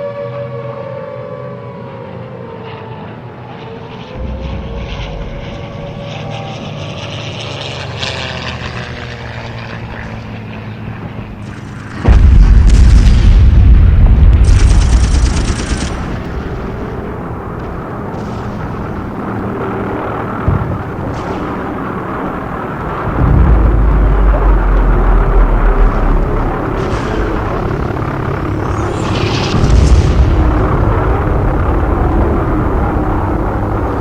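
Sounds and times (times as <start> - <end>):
aircraft engines droning: 0.0 - 13.2, 14.4 - 34.0
bomb explosion: 4.2 - 7.1, 11.7 - 34.0
rumble with crackling: 4.2 - 10.2, 11.0 - 34.0.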